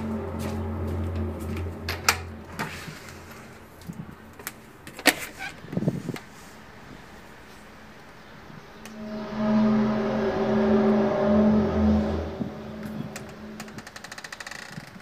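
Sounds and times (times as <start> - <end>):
low droning hum: 0.0 - 4.2, 8.9 - 14.2
brief rumble: 8.9 - 14.2.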